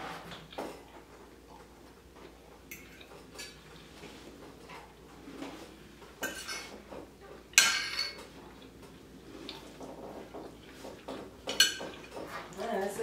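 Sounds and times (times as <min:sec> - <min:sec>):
utensils clinking on dishes: 0:02.6 - 0:03.7, 0:06.2 - 0:08.4, 0:10.9 - 0:12.6.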